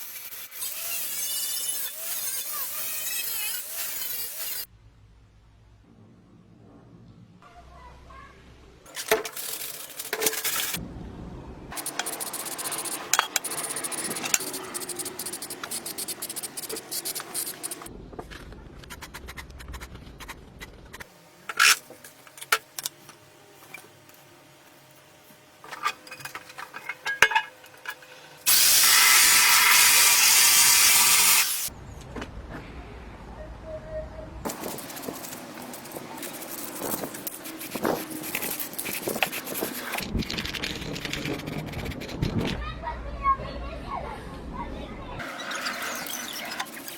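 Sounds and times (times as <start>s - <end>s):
scraping and rubbing: 11.8s - 21.8s, 34.5s - 42.6s.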